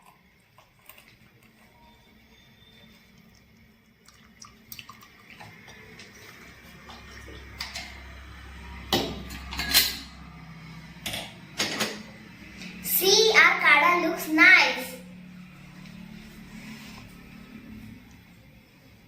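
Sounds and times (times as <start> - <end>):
tea pouring into a cup: 0.0 - 7.6.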